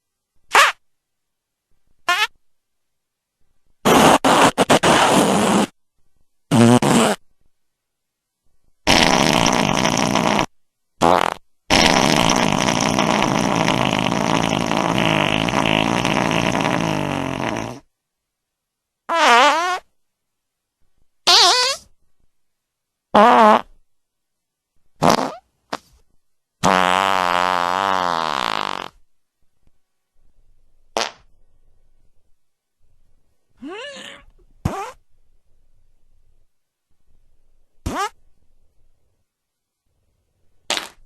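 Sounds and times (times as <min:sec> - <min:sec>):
fart sound effects: 0:00.5 - 0:00.8, 0:02.1 - 0:02.3, 0:03.8 - 0:05.8, 0:06.5 - 0:07.2, 0:08.8 - 0:17.9, 0:19.1 - 0:19.9, 0:21.3 - 0:21.9, 0:23.1 - 0:23.8, 0:25.0 - 0:25.9, 0:26.6 - 0:29.0, 0:31.0 - 0:31.3, 0:33.6 - 0:35.0, 0:37.8 - 0:38.2, 0:40.7 - 0:41.0.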